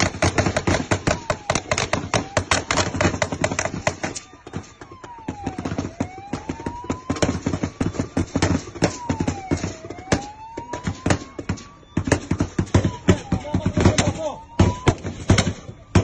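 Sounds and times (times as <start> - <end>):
rapid gunfire: 0.0 - 4.2
siren wailing: 0.0 - 16.0.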